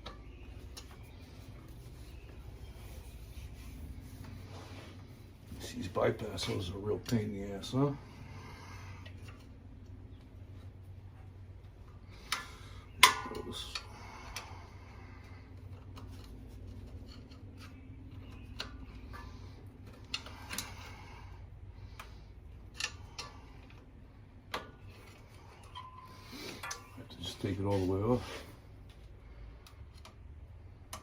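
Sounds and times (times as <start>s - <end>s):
scraping and rubbing: 0.6s - 5.6s.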